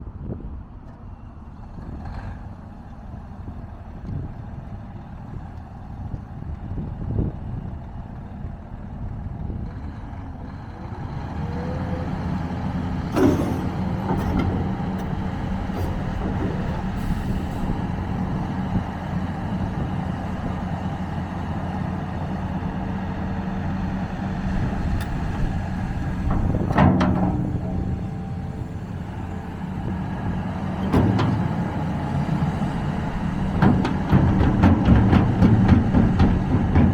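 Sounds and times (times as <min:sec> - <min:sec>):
diesel engine running: 0:00.4 - 0:36.9
sharp knocks: 0:33.5 - 0:36.9.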